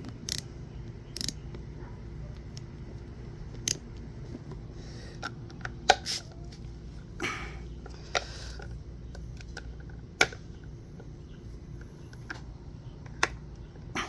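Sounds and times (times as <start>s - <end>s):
metal clicks and taps: 0.0s - 0.5s, 1.1s - 1.6s, 3.5s - 3.8s
steady low hum: 0.0s - 14.0s.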